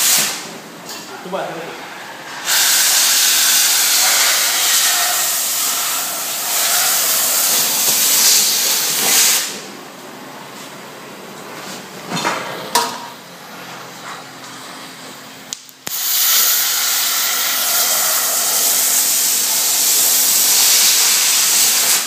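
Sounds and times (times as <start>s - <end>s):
cutting torch hissing: 2.3s - 9.6s, 15.8s - 22.0s.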